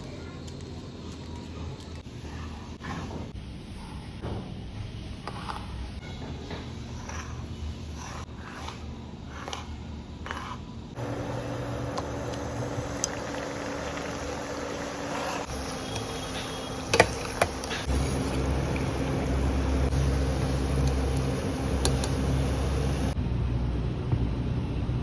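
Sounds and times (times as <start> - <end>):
dough sizzling in hot oil: 11.0 - 23.2.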